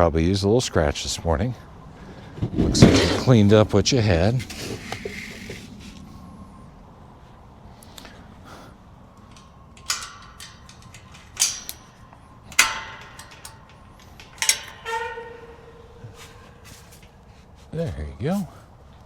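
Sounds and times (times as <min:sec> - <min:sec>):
steady ringing tone: 0:09.2 - 0:17.2
sharp metal clanks: 0:09.2 - 0:17.4.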